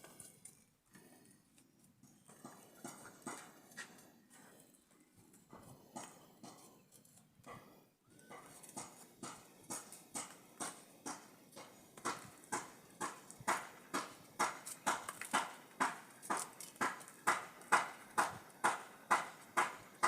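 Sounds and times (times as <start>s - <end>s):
rhythmic knocking: 8.3s - 20.0s.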